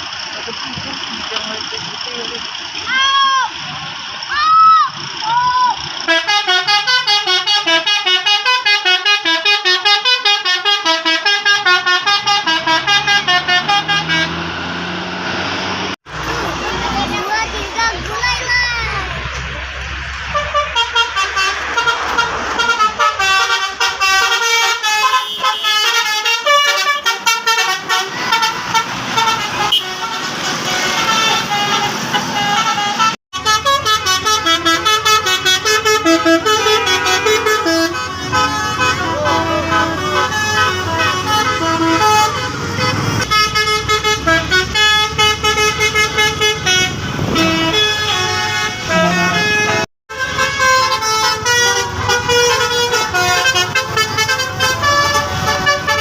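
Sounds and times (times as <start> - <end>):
bus horn playing rapid tunes: 6.0 - 14.9, 20.2 - 56.0.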